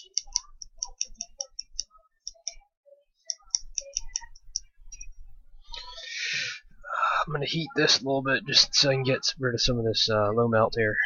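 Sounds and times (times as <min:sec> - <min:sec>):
sharp high-pitched clicks: 0:00.0 - 0:02.6, 0:03.3 - 0:05.1.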